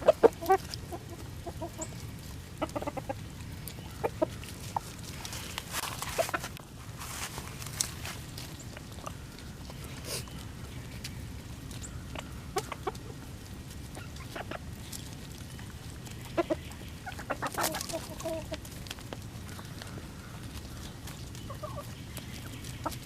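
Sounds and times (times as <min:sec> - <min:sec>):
chickens clucking: 0:00.0 - 0:23.0.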